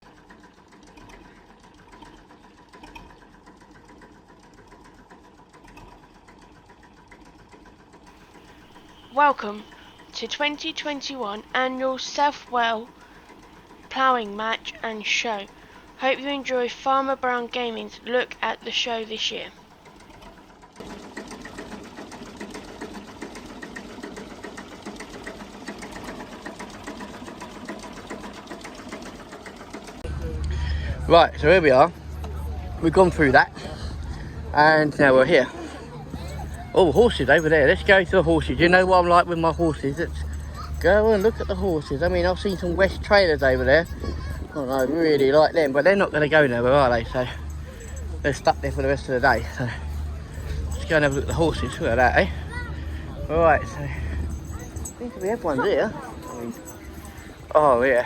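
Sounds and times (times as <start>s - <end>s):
rapid mechanical ticking: 0.0s - 30.5s, 36.3s - 58.0s
steady hum: 8.1s - 20.2s.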